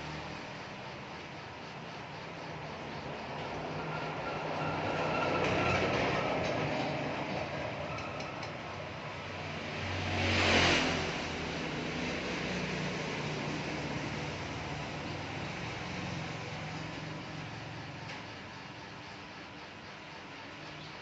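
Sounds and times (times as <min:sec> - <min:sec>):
motor vehicles passing by: 0:00.0 - 0:19.4.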